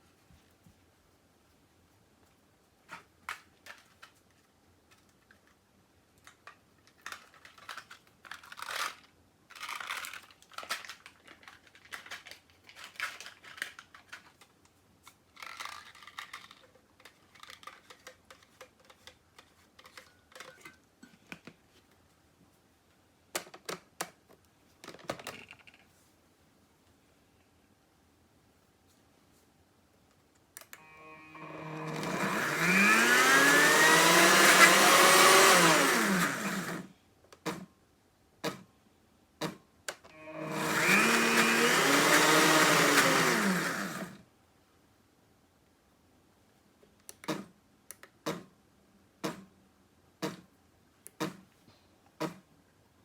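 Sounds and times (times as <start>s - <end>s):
small objects clicking and rustling: 2.9s - 21.6s, 24.8s - 26.0s.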